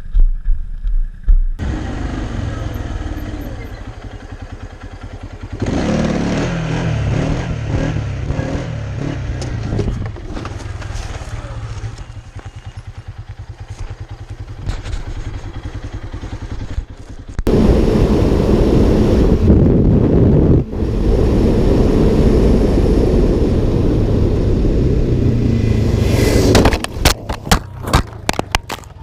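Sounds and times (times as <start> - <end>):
atv engine running: 1.6 - 26.0
wind on microphone: 17.5 - 27.6
knocks and clatter: 26.5 - 29.0.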